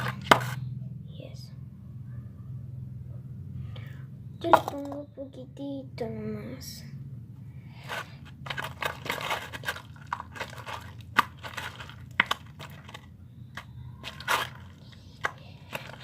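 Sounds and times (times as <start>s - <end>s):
sticky slime crackles and clicks: 8.5s - 16.0s.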